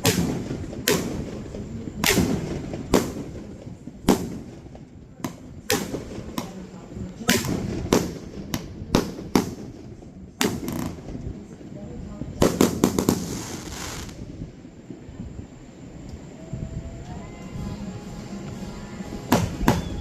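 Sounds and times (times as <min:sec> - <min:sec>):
firework shells bursting: 0:00.0 - 0:11.2, 0:19.2 - 0:20.0.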